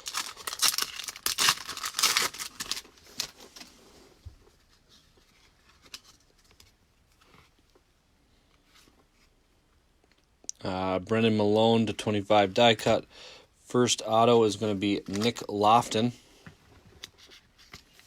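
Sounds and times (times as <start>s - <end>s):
card pack wrapper tearing: 0.0s - 3.4s
cards being handled: 14.9s - 15.9s.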